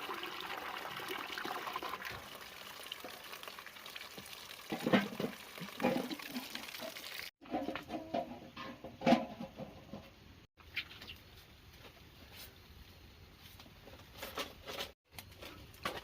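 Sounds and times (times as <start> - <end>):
water trickling and splashing: 0.0 - 7.4.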